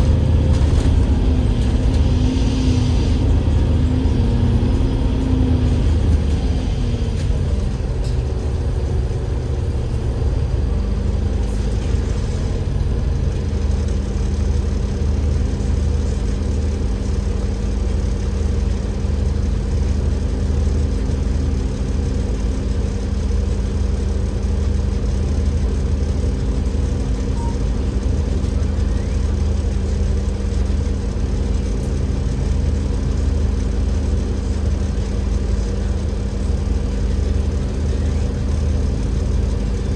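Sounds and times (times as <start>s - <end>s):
bus diesel engine hum: 0.0s - 39.9s
gearbox whine: 0.0s - 39.9s.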